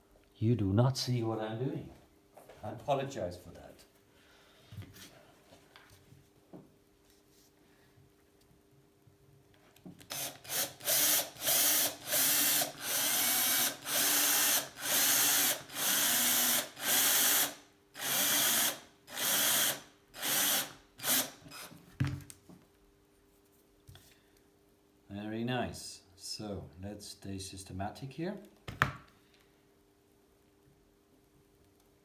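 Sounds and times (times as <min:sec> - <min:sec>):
power drill boring into metal: 0:10.1 - 0:21.6.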